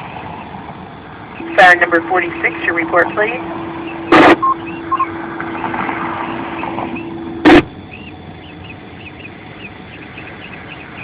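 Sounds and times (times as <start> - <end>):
steady hum: 0.0 - 11.0
birds chirping faintly: 0.3 - 11.0
radio squelch noise burst: 1.4 - 7.8
short beeps: 1.4 - 8.0.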